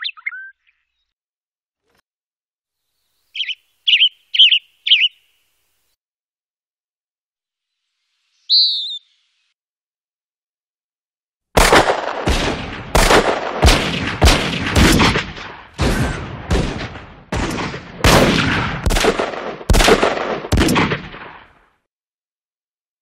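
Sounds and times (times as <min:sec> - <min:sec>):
echoing gunshots: 0:11.6 - 0:21.6.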